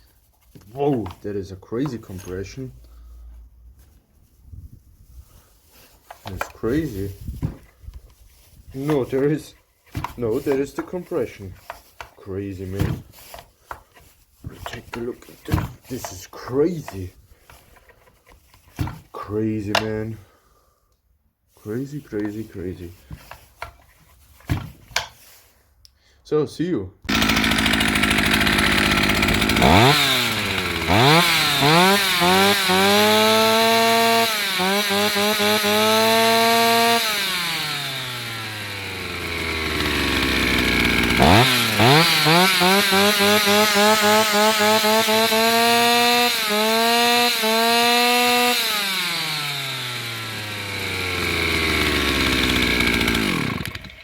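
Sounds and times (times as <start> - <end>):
chainsaw revving and idling: 27.1 - 54.0.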